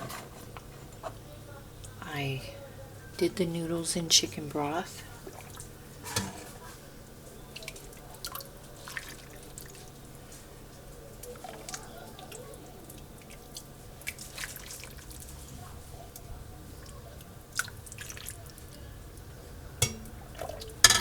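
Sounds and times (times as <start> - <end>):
soup broth dripping and splashing: 5.0 - 21.0.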